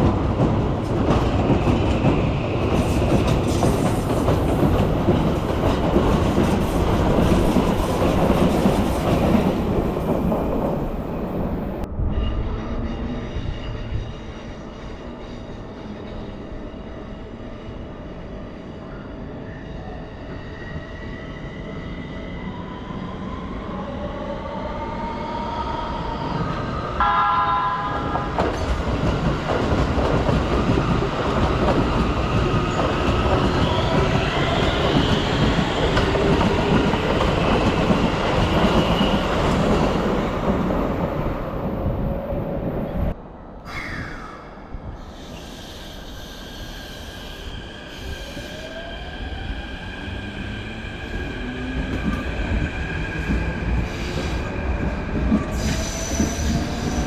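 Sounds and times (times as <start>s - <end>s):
train wheels rumbling and clattering: 0.0s - 11.9s, 27.8s - 43.2s, 45.4s - 57.0s
train horn blast: 27.0s - 28.6s.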